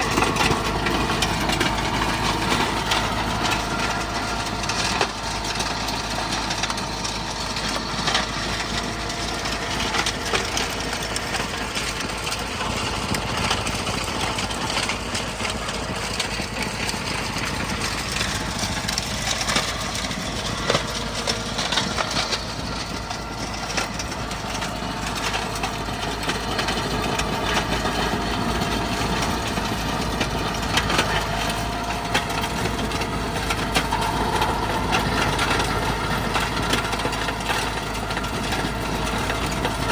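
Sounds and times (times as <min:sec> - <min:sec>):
tractor engine under load: 0:00.0 - 0:39.9.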